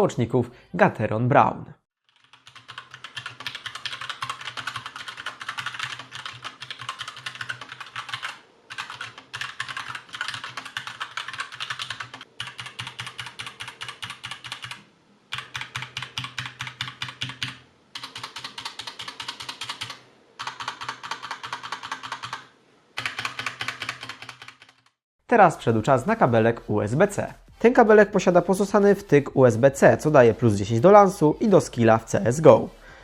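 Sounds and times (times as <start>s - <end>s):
rapid mechanical keyboard typing: 2.1s - 25.0s.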